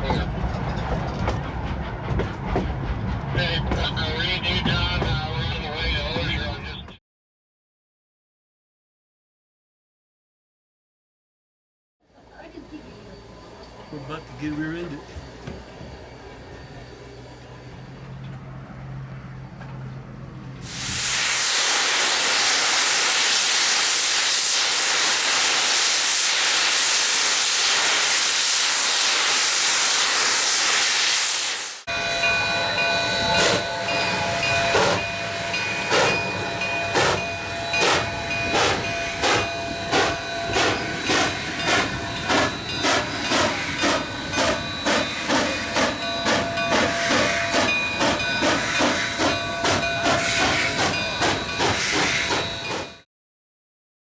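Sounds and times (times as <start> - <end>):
steam locomotive hissing steam: 12.2 - 18.6, 20.5 - 53.0
steam locomotive exhaust chuffing: 12.4 - 53.0.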